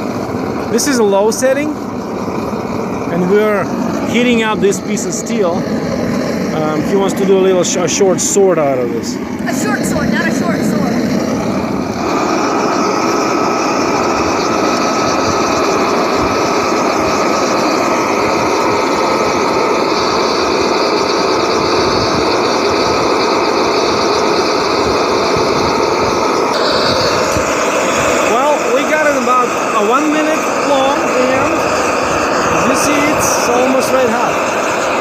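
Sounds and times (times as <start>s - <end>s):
burner rushing noise: 0.0s - 35.0s
thin steady whine: 0.0s - 35.0s.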